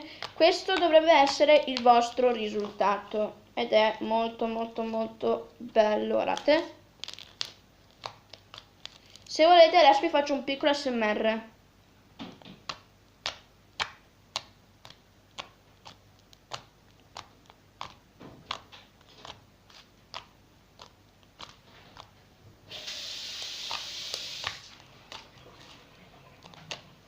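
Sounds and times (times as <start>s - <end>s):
hissing rush of noise: 22.7s - 24.8s.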